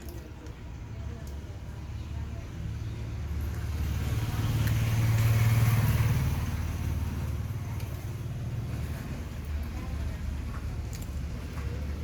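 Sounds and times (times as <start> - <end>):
vehicle engine passing by: 2.5 - 12.0.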